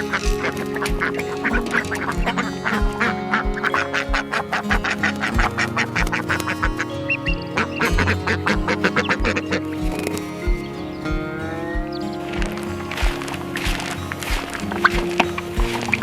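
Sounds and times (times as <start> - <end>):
low drum beat: 0.0 - 16.0
sustained chords: 0.0 - 16.0.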